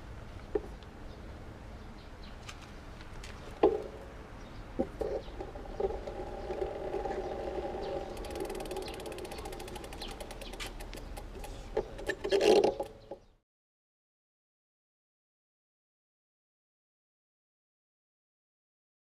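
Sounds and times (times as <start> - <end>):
bike chain over chainrings: 5.0 - 13.0
freehub ratchet ticking: 6.4 - 12.1.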